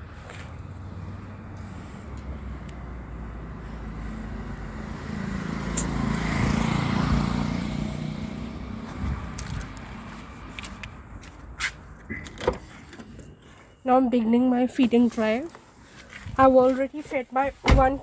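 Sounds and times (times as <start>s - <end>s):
vehicle passing by: 0.0s - 11.8s.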